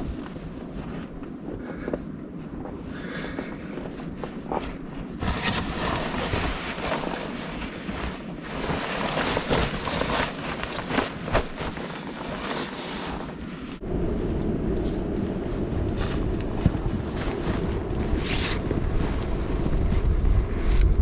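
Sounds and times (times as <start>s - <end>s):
gusty wind buffeting microphone: 0.0s - 21.0s.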